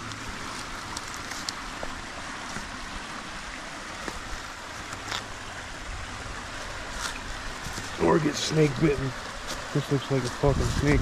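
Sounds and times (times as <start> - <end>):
faint clicks of footsteps on rocks: 0.0 - 2.8, 4.0 - 5.3, 9.2 - 10.7
stream rushing over rocks: 0.0 - 11.0.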